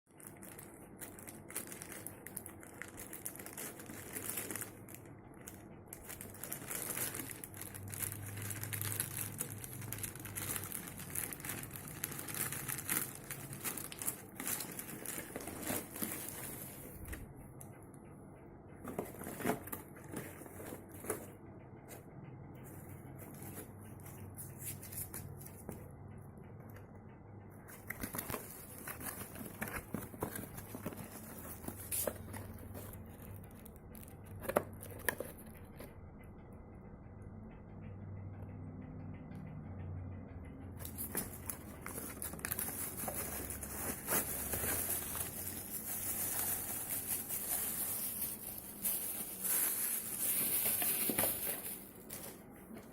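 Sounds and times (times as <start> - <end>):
packaging crinkling and tearing: 0.2 - 17.2, 27.8 - 35.5, 40.8 - 52.4.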